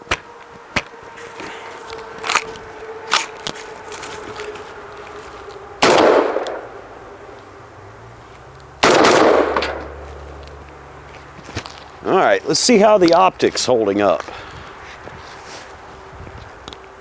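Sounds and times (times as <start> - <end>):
rifle shots echoing: 5.8 - 7.0, 8.8 - 10.4.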